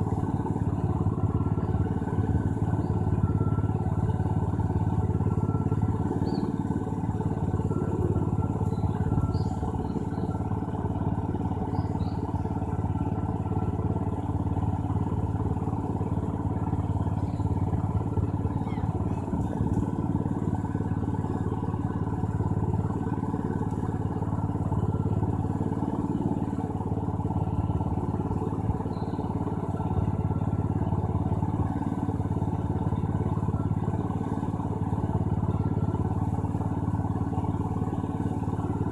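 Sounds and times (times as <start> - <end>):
low mechanical hum: 0.0 - 38.9
faint high chirps: 5.6 - 6.9, 7.6 - 10.5.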